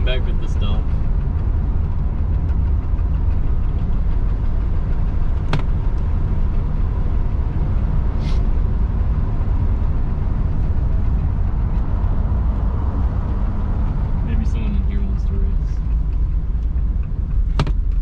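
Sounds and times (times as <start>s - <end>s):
car engine and road noise: 0.0s - 18.0s
brief hiss: 8.2s - 8.5s.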